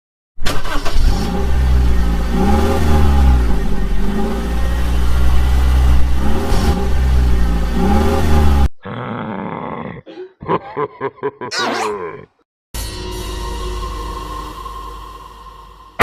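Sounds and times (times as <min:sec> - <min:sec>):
engine revving: 0:00.4 - 0:08.7.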